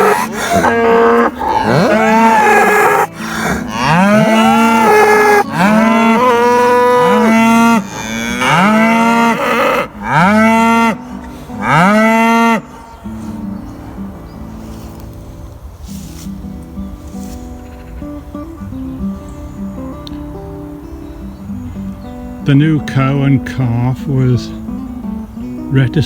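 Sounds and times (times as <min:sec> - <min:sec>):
cattle mooing: 0:00.0 - 0:12.9.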